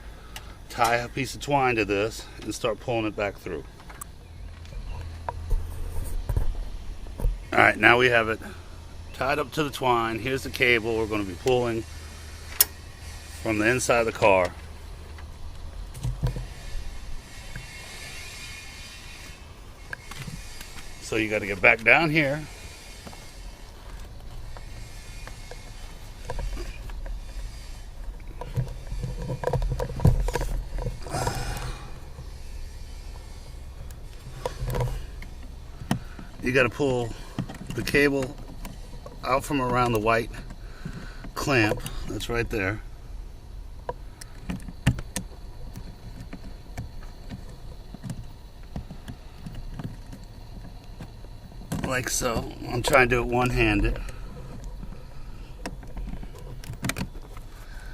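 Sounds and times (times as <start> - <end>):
low steady rumble: 0.0 - 57.9
clicks and knocks under dashboard: 23.0 - 32.4, 33.1 - 42.0, 43.8 - 57.9.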